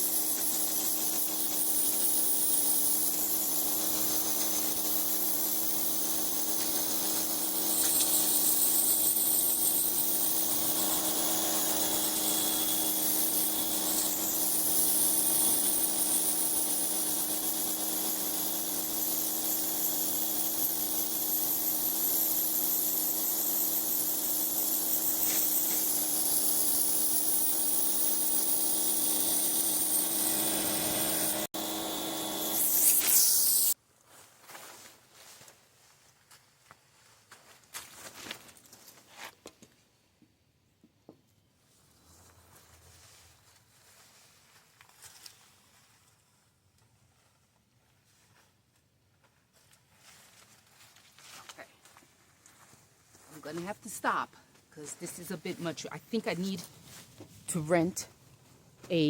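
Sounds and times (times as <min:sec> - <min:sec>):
pressure washer spraying water: 0:00.0 - 0:33.8
pump humming: 0:00.0 - 0:33.8.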